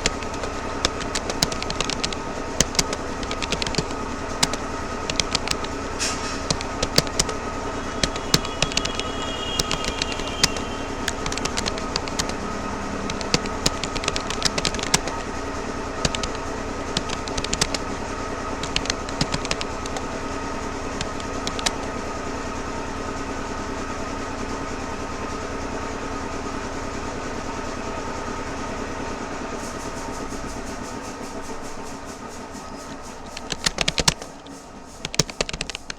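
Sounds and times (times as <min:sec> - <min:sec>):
keyboard typing: 0:00.0 - 0:20.2, 0:20.8 - 0:21.9, 0:32.8 - 0:35.9
steady machine hum: 0:00.0 - 0:35.9.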